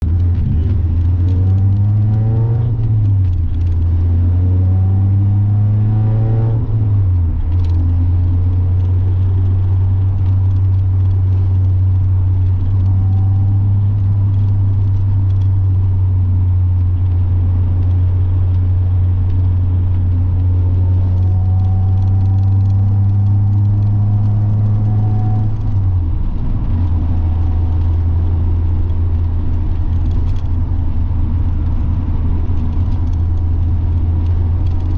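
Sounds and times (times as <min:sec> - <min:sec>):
car engine accelerating: 0:00.0 - 0:34.9.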